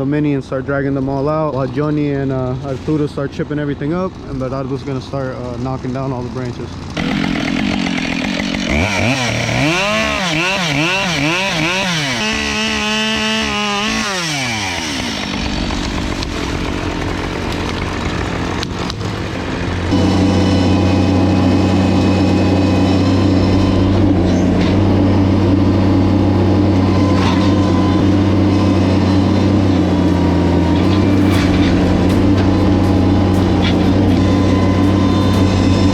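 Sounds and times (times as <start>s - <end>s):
chainsaw revving: 5.5s - 35.9s
engine running steadily: 14.6s - 35.9s.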